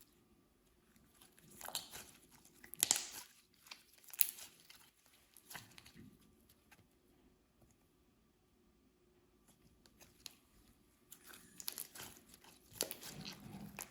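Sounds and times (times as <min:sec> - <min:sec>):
slime crackling and popping: 0:01.2 - 0:06.0, 0:11.1 - 0:13.9.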